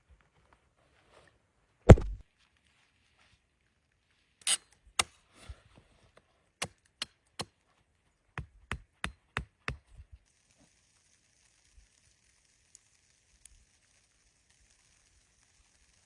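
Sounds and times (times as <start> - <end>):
sharp wooden knocks: 1.9 - 2.2.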